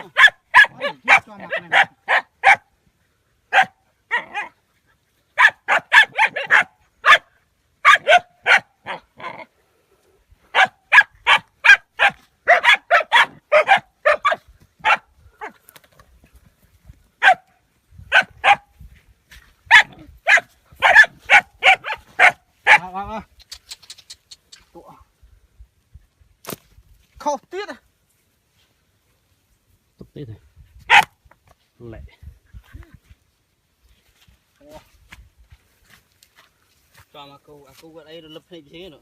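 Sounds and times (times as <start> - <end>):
dog barking: 0.0 - 2.7, 3.5 - 4.6, 5.4 - 9.5, 10.5 - 15.6, 17.2 - 17.5, 18.1 - 18.7, 19.7 - 22.9, 30.9 - 31.1.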